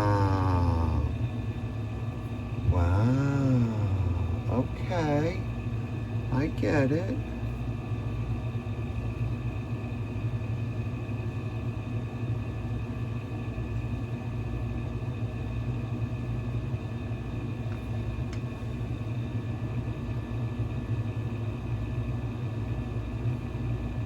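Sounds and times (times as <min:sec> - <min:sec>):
low background rumble: 0:00.0 - 0:09.7
faint high hum: 0:00.0 - 0:24.0.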